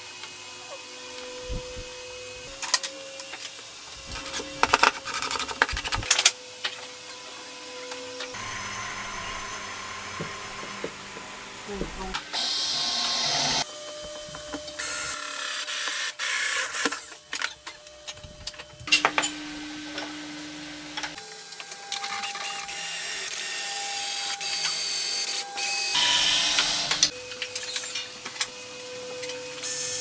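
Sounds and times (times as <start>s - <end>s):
power tools whining on wood: 0.1s - 30.0s
clicks and scraping: 3.9s - 6.3s.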